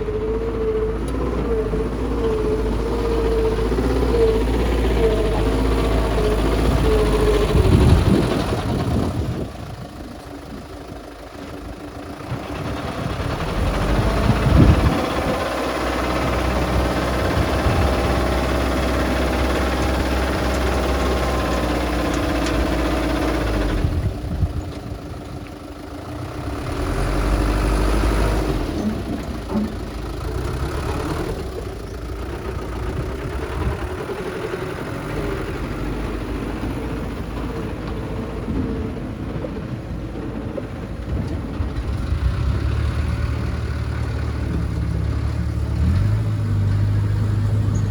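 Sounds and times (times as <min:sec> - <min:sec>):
heavy diesel machinery revving: 0:00.0 - 0:47.9.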